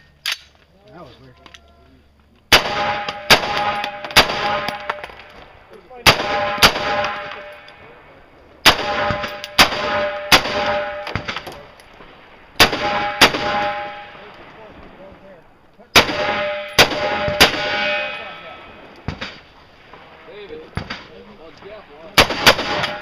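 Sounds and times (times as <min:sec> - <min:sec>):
rifle shots: 0:02.5 - 0:07.9, 0:08.6 - 0:14.9, 0:15.9 - 0:23.0
metallic target ring: 0:16.2 - 0:18.8.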